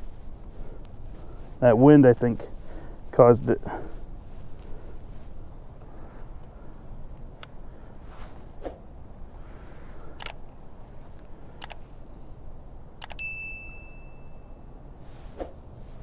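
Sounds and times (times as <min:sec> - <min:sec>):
short ringing ding: 0:13.2 - 0:14.8.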